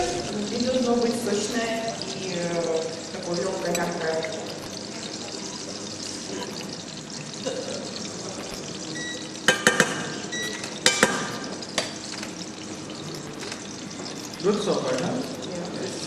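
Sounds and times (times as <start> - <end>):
pancakes sizzling in oil: 0.0 - 16.0
utensil clinking against pan: 3.4 - 4.9, 9.3 - 12.3.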